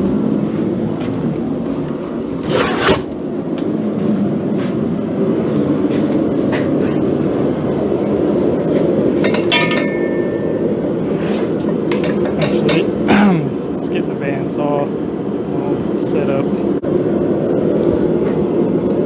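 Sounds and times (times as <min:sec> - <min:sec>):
forge roaring: 0:00.0 - 0:14.1
metal scrape: 0:02.4 - 0:03.2
ringing metal clinks: 0:09.2 - 0:10.8.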